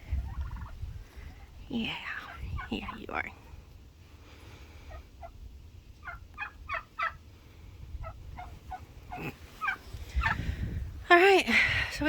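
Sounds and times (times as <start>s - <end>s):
turkeys calling: 0.1s - 0.8s, 4.8s - 7.3s, 8.0s - 10.5s.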